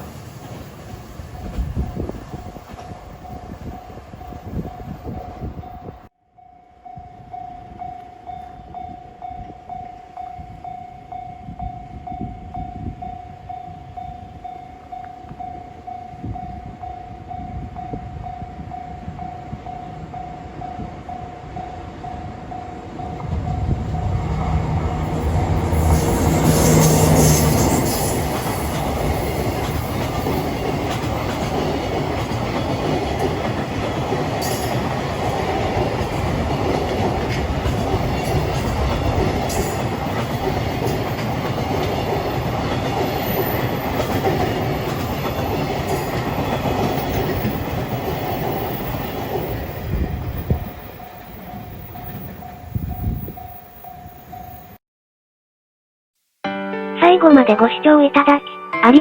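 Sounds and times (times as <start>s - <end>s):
train wheels over rails: 0.0s - 5.6s, 20.5s - 54.7s
diesel locomotive engine: 19.8s - 54.7s
level crossing bell ringing: 57.0s - 59.0s.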